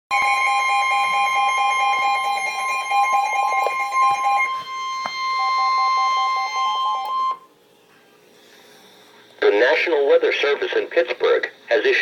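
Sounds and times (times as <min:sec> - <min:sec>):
loud high alert tone: 0:00.1 - 0:07.5
lower tone beeping in pulses: 0:00.1 - 0:07.5.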